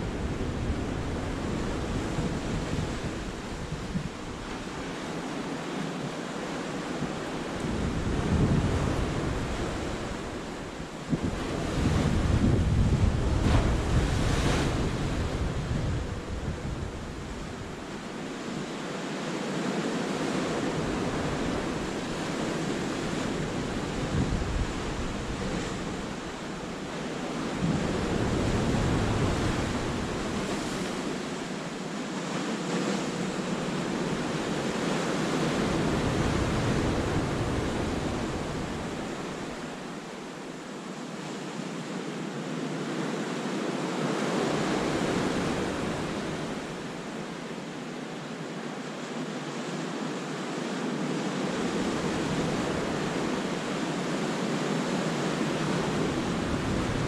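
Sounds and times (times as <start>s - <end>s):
waves breaking over rocks: 11.2s - 17.8s.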